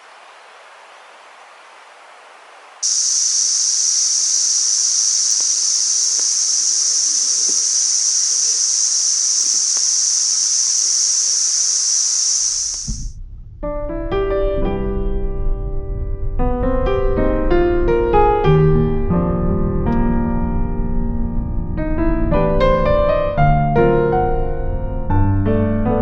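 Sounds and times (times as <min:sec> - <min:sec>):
high-pitched hiss: 0:00.0 - 0:13.2.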